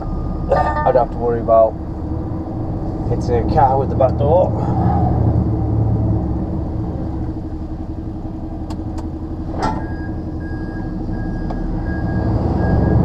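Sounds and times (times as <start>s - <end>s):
repeating high beep: 0.0s - 1.2s
diesel engine running: 0.0s - 13.0s.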